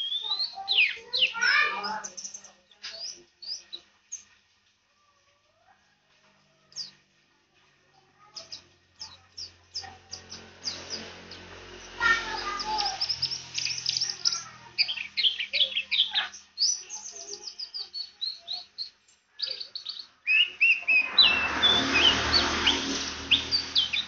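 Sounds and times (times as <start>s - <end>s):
bird twittering song: 0.0s - 4.4s, 6.6s - 7.0s, 8.2s - 24.0s
broad rushing noise: 20.3s - 24.0s.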